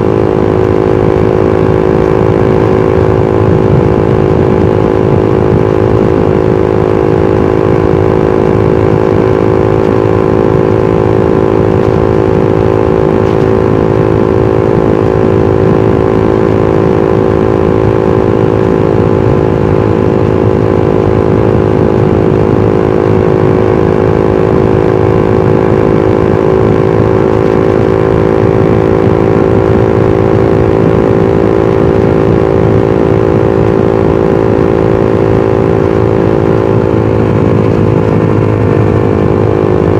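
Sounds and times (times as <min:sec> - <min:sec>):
motorcycle engine cruising: 0:00.0 - 0:39.9
road and wind rumble: 0:00.0 - 0:39.9.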